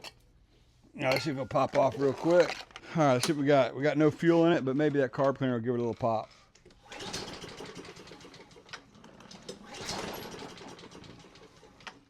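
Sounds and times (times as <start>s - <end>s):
lawn mower engine cranking: 1.1s - 3.4s, 5.9s - 12.0s.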